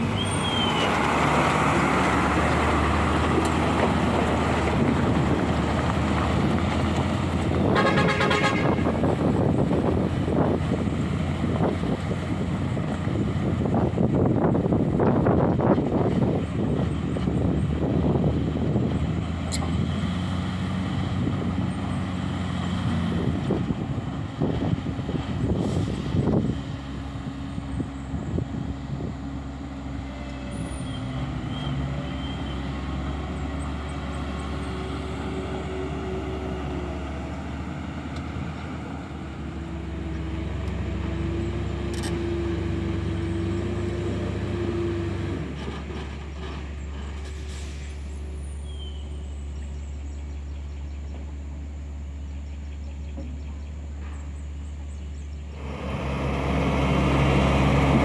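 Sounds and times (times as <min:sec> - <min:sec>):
drawn-out squeals: 0:00.0 - 0:04.7, 0:30.5 - 0:36.8
diesel machinery droning: 0:00.0 - 0:58.0.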